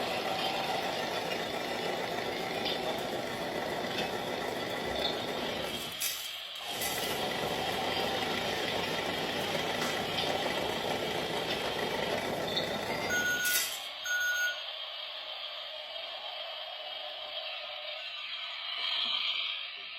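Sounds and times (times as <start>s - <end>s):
washing machine churning: 0.0s - 13.5s
short electronic beeps: 13.1s - 14.7s.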